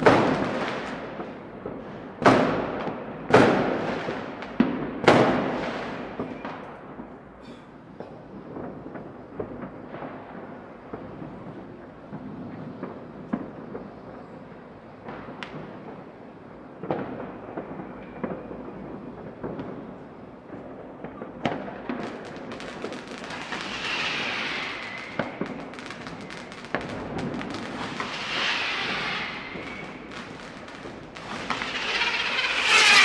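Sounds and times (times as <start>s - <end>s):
firecracker crackling: 0.0s - 6.4s, 8.1s - 33.0s
firework bangs: 0.0s - 7.2s, 15.0s - 33.0s
fireworks hissing: 22.0s - 33.0s.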